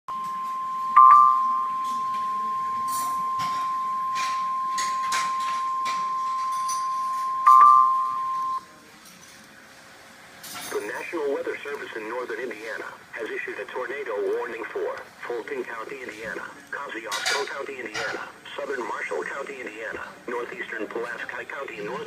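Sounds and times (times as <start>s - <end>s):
steady alarm tone: 0.1s - 8.6s.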